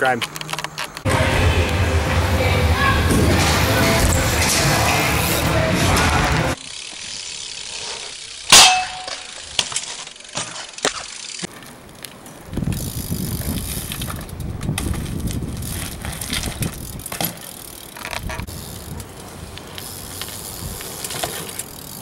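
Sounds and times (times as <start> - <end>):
bike clicks and rattles: 0.0 - 1.1, 3.3 - 22.0
tyres rolling rumble: 0.2 - 6.7
sharp metallic clang: 8.5 - 9.4.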